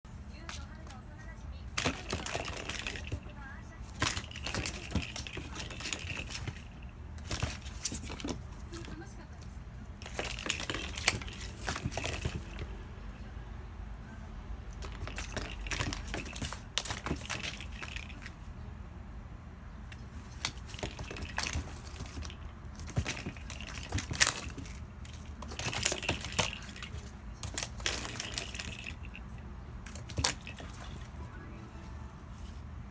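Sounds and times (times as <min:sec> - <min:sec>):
plastic cat toy clicking and clattering: 0:01.7 - 0:12.8, 0:14.7 - 0:18.4, 0:19.9 - 0:31.2.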